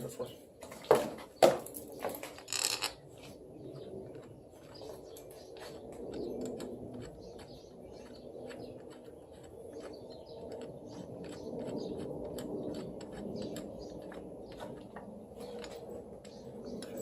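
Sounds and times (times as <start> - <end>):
steady low hum: 1.9 - 17.0
hand tools clicking and tapping: 4.2 - 17.0.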